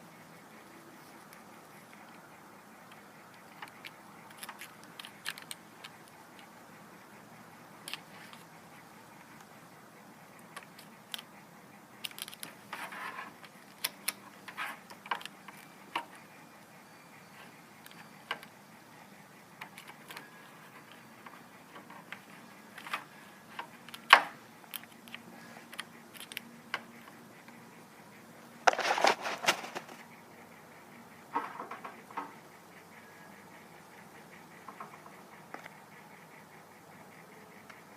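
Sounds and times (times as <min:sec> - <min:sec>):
objects being handled: 0:28.6 - 0:30.1.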